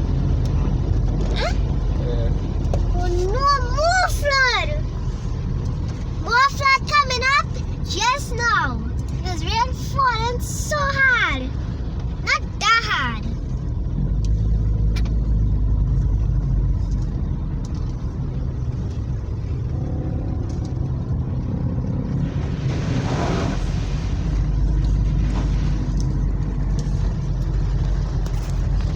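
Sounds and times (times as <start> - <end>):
vehicle engine rumbling: 0.0 - 28.9
car passing through floodwater: 17.1 - 28.9.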